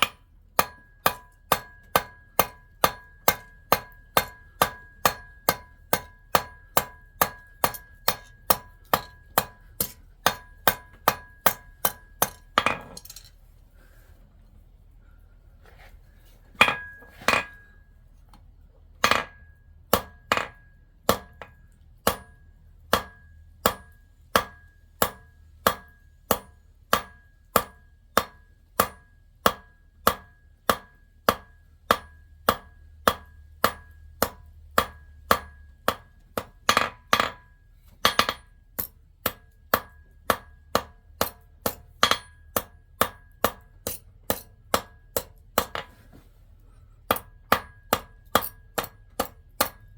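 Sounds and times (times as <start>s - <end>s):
hammer on metal ringing: 0.0s - 13.1s.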